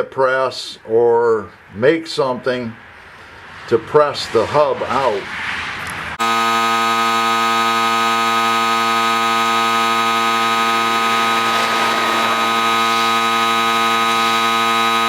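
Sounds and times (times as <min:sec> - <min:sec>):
electronic buzzing tone: 0:11.5 - 0:12.7.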